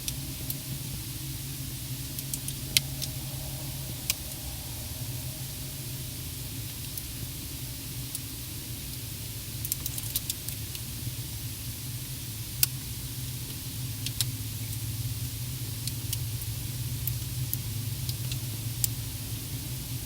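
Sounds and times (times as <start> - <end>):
low engine hum: 0.0 - 8.2.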